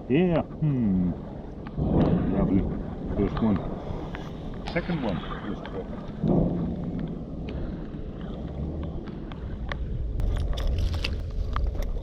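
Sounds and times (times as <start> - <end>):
low rumble: 0.0 - 12.0.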